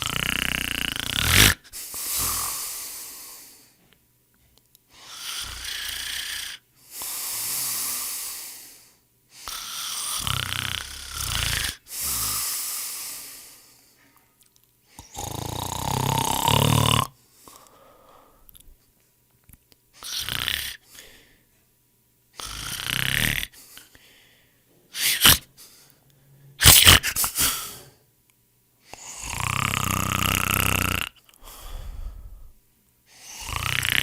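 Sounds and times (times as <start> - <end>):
person snoring: 0.0 - 3.7, 5.0 - 13.7, 15.0 - 18.5, 20.0 - 21.2, 22.4 - 23.9, 24.9 - 25.5, 29.0 - 34.0.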